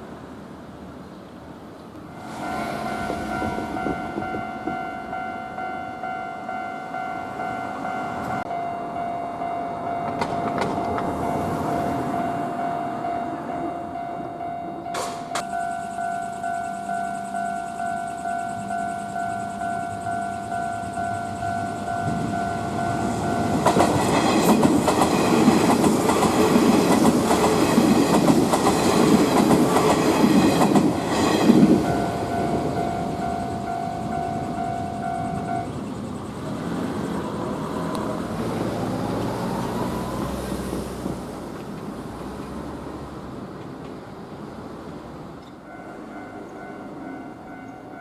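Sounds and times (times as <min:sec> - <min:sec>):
train rumble and wheel clatter: 0:00.0 - 0:48.0
level-crossing alarm bell ringing: 0:02.2 - 0:36.7, 0:45.6 - 0:48.0.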